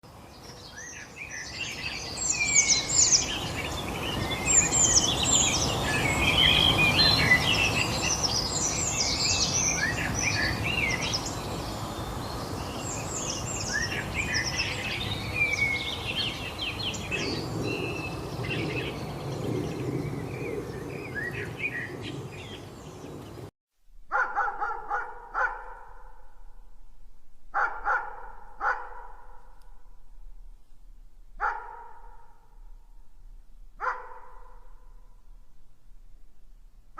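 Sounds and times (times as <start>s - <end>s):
steady outdoor hiss: 0.0s - 36.9s
small birds chirping: 0.1s - 23.5s
dog barking: 24.1s - 26.3s, 27.5s - 29.6s, 31.4s - 32.5s, 33.8s - 35.0s.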